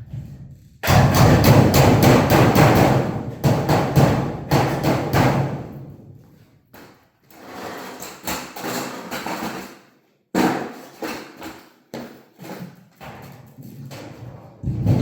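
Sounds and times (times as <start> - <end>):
knocks on sheet-metal ductwork: 0.8 - 6.1.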